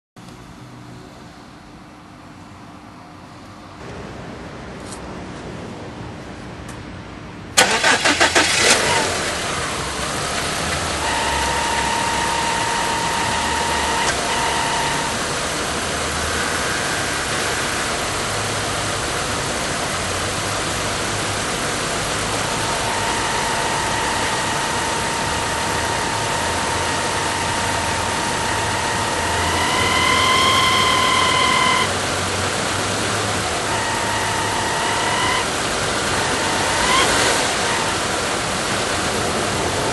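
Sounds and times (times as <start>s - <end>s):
car engine idling: 7.5s - 39.9s
engine starter cranking: 7.6s - 15.4s, 21.6s - 38.2s
high pulley whine: 7.6s - 39.9s.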